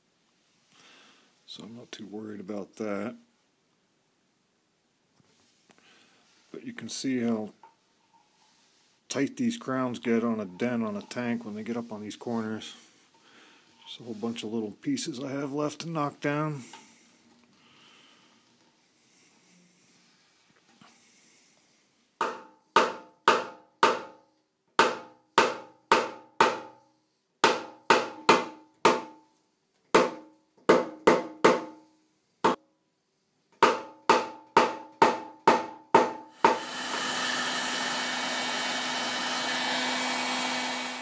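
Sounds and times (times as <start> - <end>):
hammer tapping on metal tank: 27.4 - 29.2, 30.0 - 31.8, 33.6 - 36.6.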